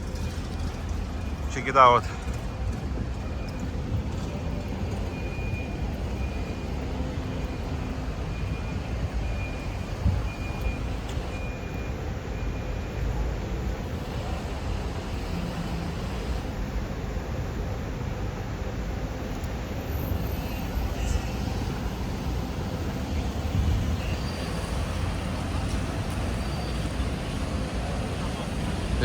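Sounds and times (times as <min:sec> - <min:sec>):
traffic rumble: 0:00.0 - 0:29.0
faint high beeps: 0:03.3 - 0:13.2.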